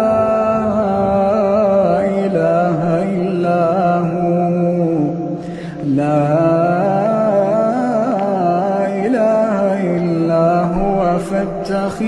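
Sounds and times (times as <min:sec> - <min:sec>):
person reciting melodically: 0:00.0 - 0:12.0
short breath: 0:05.4 - 0:05.8.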